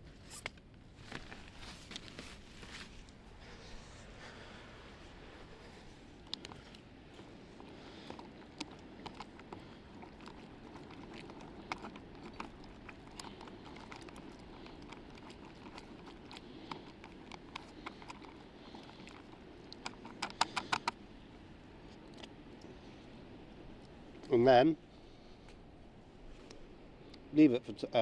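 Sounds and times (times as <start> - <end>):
spoon stirring in foil pouch: 7.3 - 21.0.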